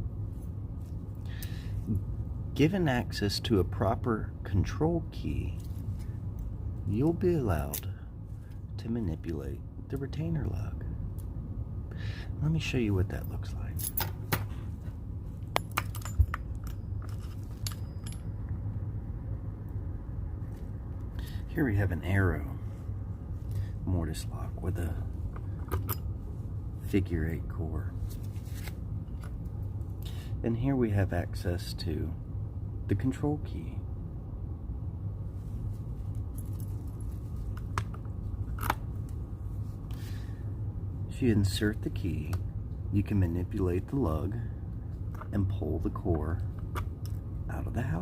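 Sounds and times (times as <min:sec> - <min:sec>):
steady low hum: 0:00.0 - 0:48.0
keys and metal hardware clinking: 0:13.2 - 0:14.7, 0:15.4 - 0:18.6, 0:25.4 - 0:26.1, 0:36.0 - 0:37.8.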